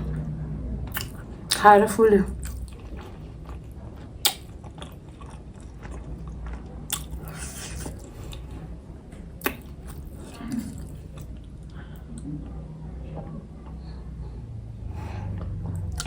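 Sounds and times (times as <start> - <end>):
close-up chewing: 2.4 - 8.6, 9.4 - 12.0.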